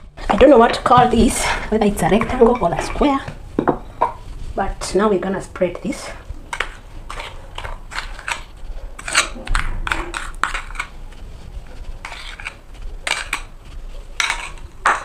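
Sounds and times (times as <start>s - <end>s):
spatula scraping a bowl: 0.3s - 3.4s, 5.3s - 15.0s.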